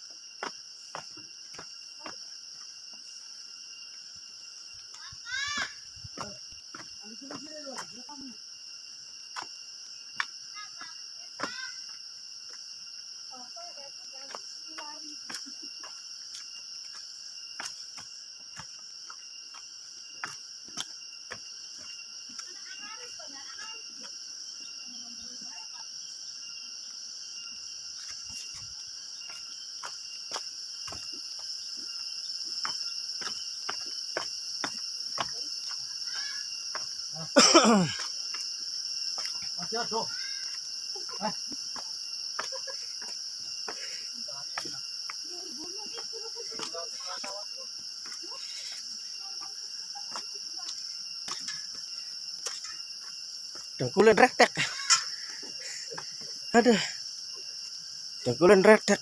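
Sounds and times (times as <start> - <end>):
high-pitched insect chorus: 0.0 - 59.0.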